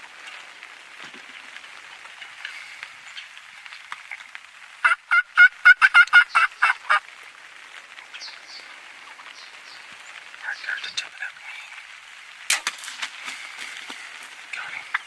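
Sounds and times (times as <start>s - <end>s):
turkey gobbling: 4.8s - 7.0s, 9.0s - 9.6s, 13.2s - 15.0s.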